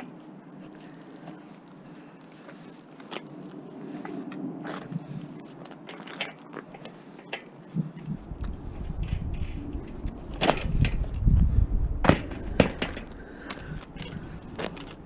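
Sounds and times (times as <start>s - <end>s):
low irregular rumble: 7.8s - 15.0s.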